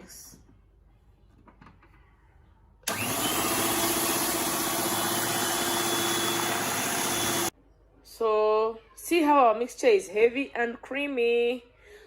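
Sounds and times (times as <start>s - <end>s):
electric mixer humming: 2.9s - 7.5s.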